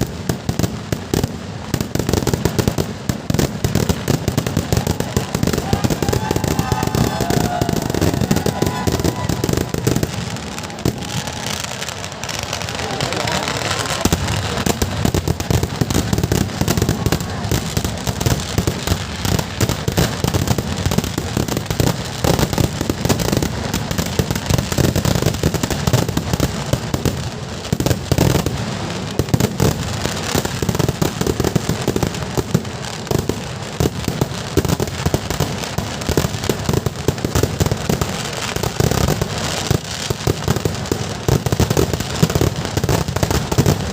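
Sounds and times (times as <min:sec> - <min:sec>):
rapid firework explosions: 0:00.0 - 0:43.9.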